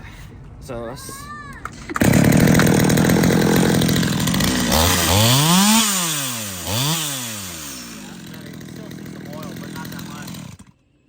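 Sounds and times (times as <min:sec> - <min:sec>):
chainsaw revving: 0:02.0 - 0:10.8.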